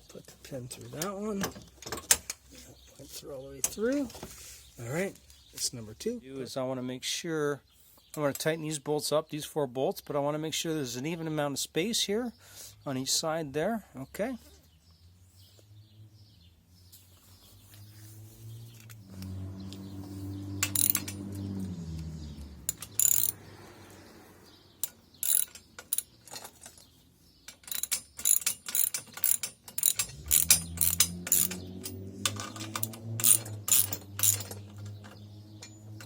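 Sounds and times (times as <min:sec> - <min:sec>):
ratchet wrench clicking: 0:20.5 - 0:23.4, 0:24.8 - 0:26.4, 0:27.5 - 0:36.0.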